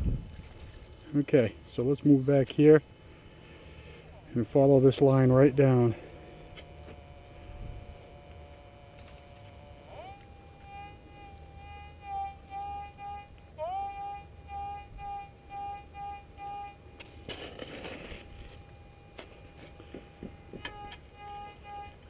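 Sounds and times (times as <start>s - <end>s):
metal detector tone and beeps: 10.0s - 16.8s, 18.2s - 22.0s.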